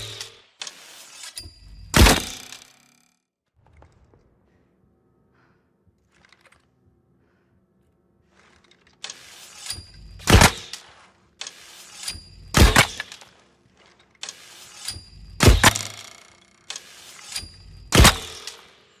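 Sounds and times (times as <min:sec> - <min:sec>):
bowstring rasping draw: 0:08.3 - 0:18.7.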